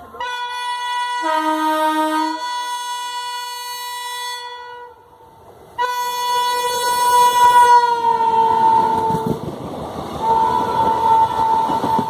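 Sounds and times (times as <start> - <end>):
locomotive horn blast: 0.2 - 5.1, 5.8 - 9.4, 10.2 - 12.0.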